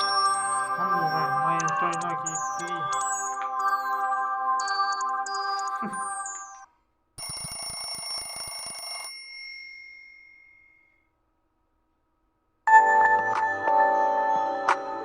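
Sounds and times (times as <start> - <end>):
phone ringtone trilling: 0.0 - 10.9.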